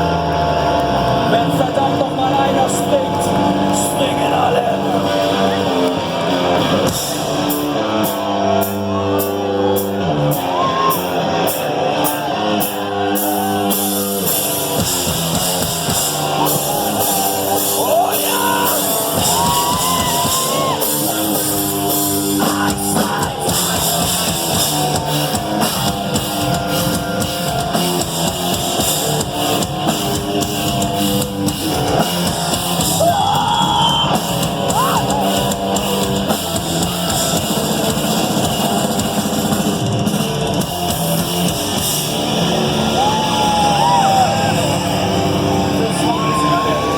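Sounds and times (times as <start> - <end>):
rock band playing live: 0.0 - 46.9
person singing: 22.4 - 25.2.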